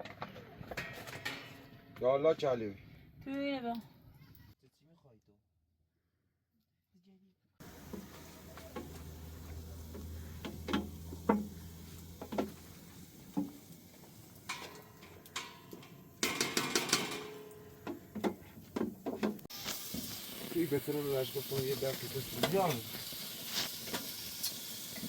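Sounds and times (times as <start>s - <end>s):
low hum: 7.6s - 13.0s.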